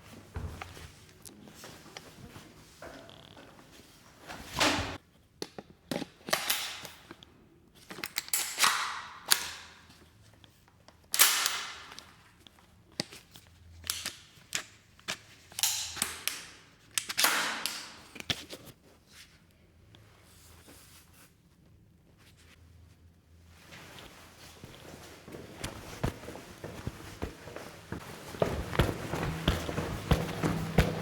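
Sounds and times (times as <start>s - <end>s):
footsteps and shoe scuffs: 23.7s - 31.0s.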